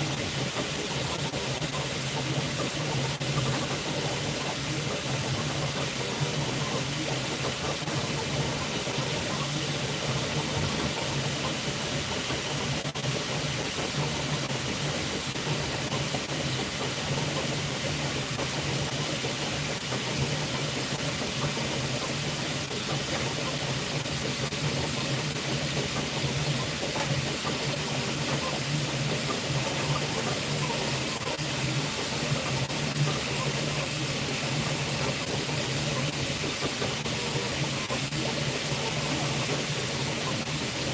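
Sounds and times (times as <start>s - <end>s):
printer humming with hiss: 0.0s - 40.9s.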